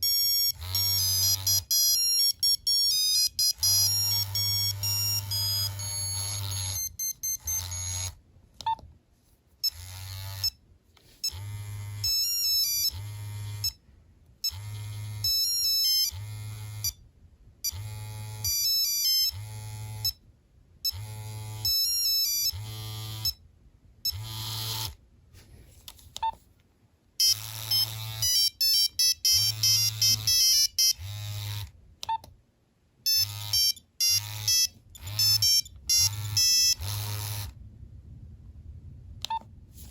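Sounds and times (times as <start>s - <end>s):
phone ringtone beeping melody: 0.0s - 8.2s, 12.0s - 13.0s, 15.2s - 16.2s, 18.5s - 20.2s, 21.7s - 22.6s, 27.2s - 31.1s, 33.1s - 37.3s
phone vibrate motor buzzing: 0.0s - 8.2s, 9.6s - 10.6s, 11.2s - 13.8s, 14.4s - 17.0s, 17.6s - 20.2s, 20.8s - 23.4s, 24.0s - 25.0s, 27.2s - 31.8s, 33.0s - 37.6s.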